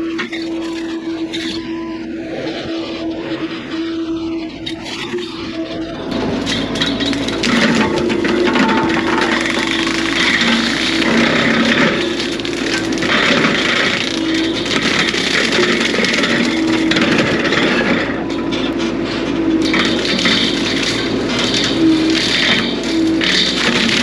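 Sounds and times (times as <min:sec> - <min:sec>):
excavator engine: 0:00.0 - 0:24.0
brush cutter crushing wood: 0:06.1 - 0:24.0.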